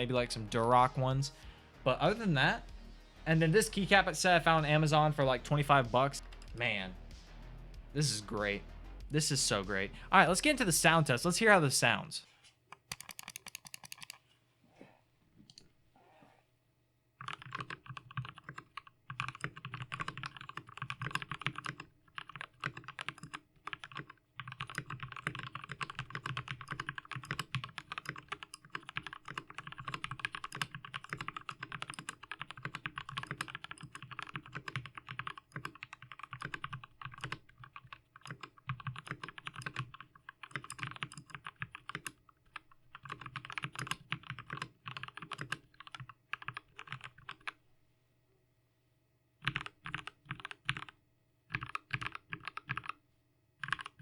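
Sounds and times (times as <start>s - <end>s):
typing on mechanical keyboard: 12.7s - 14.2s, 17.2s - 47.6s, 49.4s - 53.0s, 53.6s - 54.0s.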